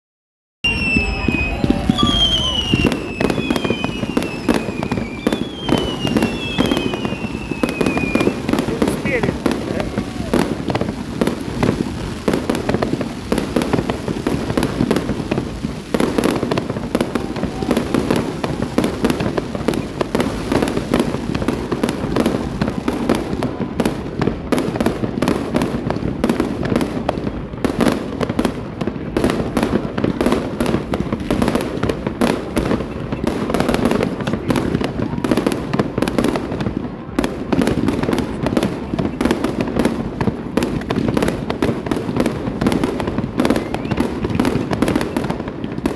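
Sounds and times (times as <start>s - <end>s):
fireworks bangs and crackles: 0.6s - 45.9s.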